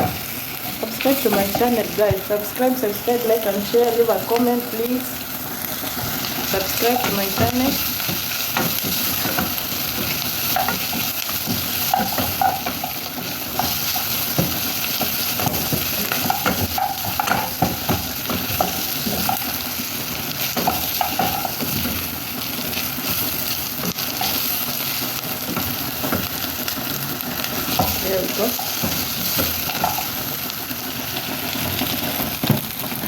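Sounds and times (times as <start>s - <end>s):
onions sizzling in a pan: 0.0s - 33.0s.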